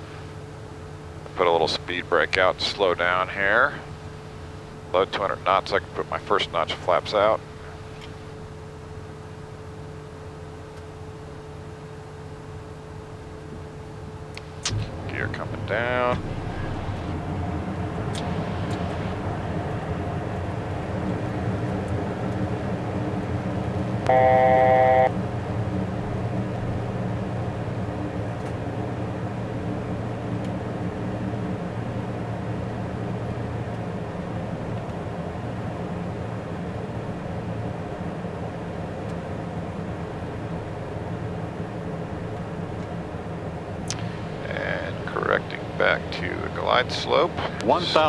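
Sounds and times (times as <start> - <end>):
jet cockpit noise: 0.0 - 48.0
loud electronic tone: 24.0 - 25.2.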